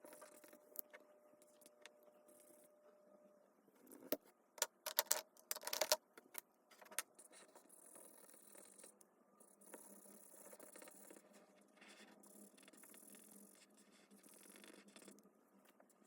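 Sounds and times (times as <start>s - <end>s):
toy pieces clicking and rattling: 4.6s - 6.0s
faint scratching: 7.1s - 16.0s.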